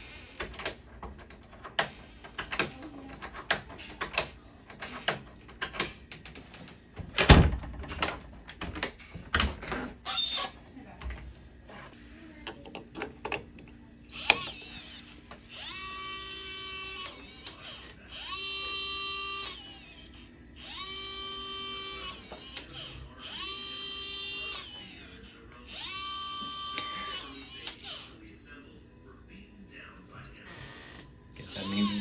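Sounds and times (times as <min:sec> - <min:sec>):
small electric motor whirring: 0:10.0 - 0:10.6, 0:14.1 - 0:28.1, 0:31.4 - 0:32.0.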